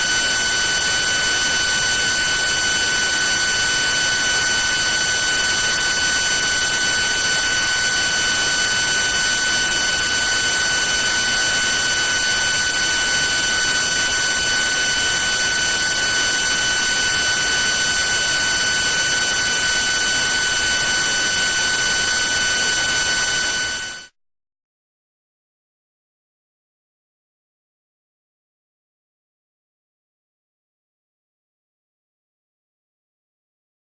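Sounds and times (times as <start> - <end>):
spindle high-pitched whine: 0.0 - 24.2.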